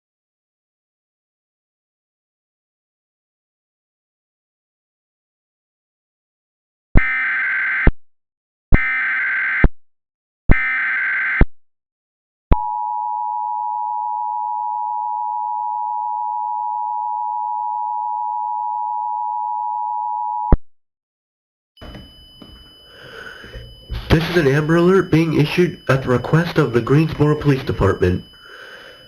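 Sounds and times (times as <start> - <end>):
two-tone attention signal: 21.8 - 29.0
harsh digital data blasts: 23.2 - 29.0.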